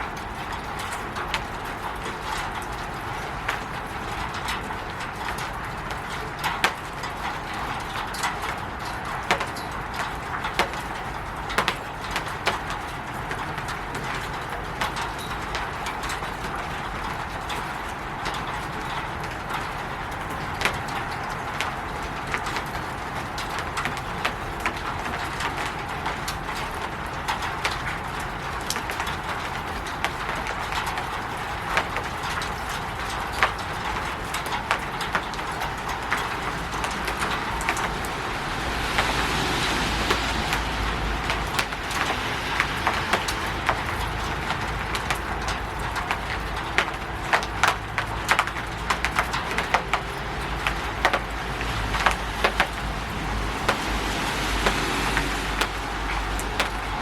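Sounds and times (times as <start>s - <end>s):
drips ticking: 0.0s - 57.0s
rain pattering on a roof: 0.0s - 57.0s
rushing with low rumble: 18.3s - 57.0s.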